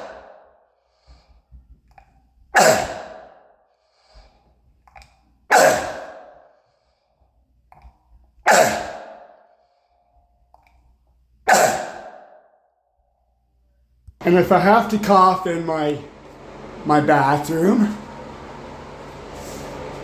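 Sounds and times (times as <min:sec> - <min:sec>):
man barking cough: 0:02.6 - 0:03.2, 0:05.5 - 0:06.2, 0:08.5 - 0:09.1, 0:11.5 - 0:12.2.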